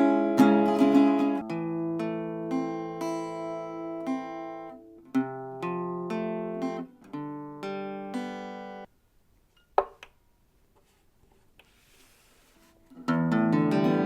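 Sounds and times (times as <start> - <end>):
acoustic guitar chords: 0.0 - 8.9, 13.0 - 14.0.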